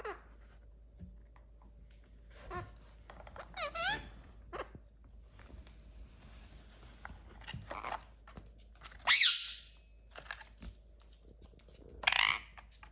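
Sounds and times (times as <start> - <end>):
parrot screech: 9.0 - 9.7.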